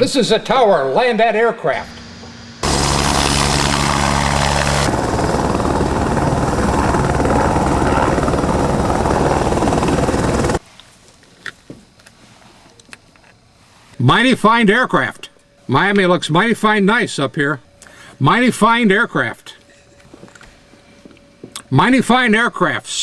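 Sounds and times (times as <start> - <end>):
helicopter engine hum: 2.6 - 10.6
rapid rotor chop: 2.6 - 10.6.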